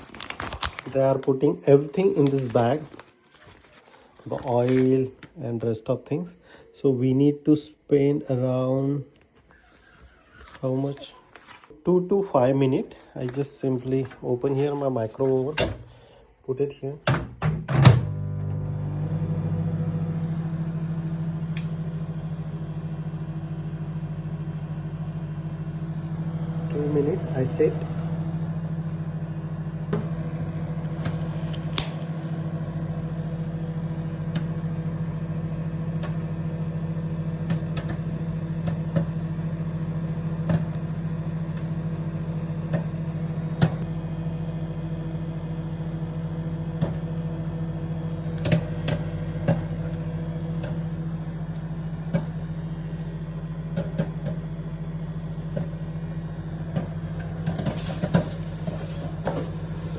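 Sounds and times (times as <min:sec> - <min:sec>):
microwave oven humming: 0:15.2 - 0:59.9.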